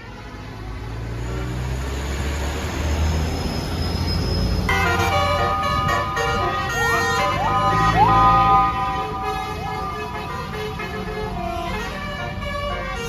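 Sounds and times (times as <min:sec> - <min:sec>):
multi-tone bus horn melody: 0:00.0 - 0:00.8, 0:04.7 - 0:13.0
bus engine rumbling: 0:00.0 - 0:13.0.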